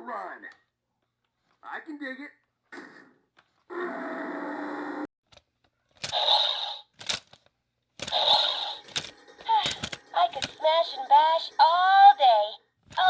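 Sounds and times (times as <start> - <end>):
clicks: 5.3 - 10.6.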